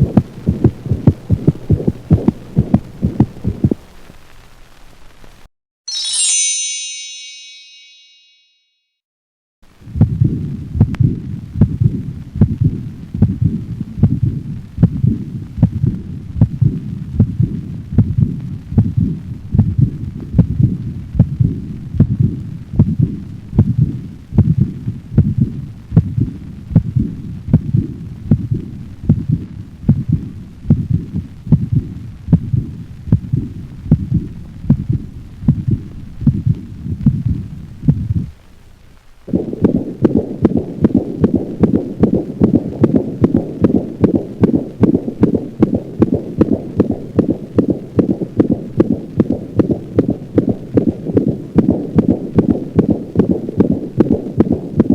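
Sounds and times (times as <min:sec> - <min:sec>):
heartbeat through stethoscope: 0:00.0 - 0:03.9, 0:09.9 - 0:38.4, 0:39.3 - 0:54.9
steady low hum: 0:00.0 - 0:05.2, 0:09.7 - 0:54.9.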